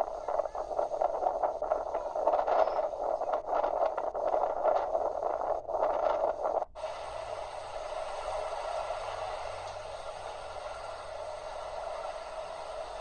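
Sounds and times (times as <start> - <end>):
heavy rain: 6.8 - 13.0.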